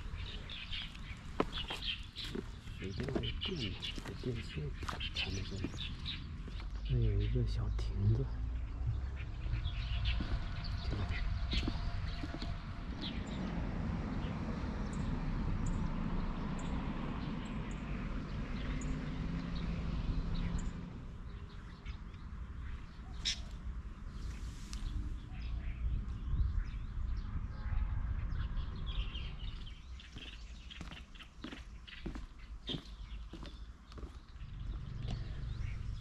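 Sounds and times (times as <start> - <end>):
songbirds chirping: 0.0 - 36.0
low rumble: 4.0 - 17.4, 34.4 - 36.0.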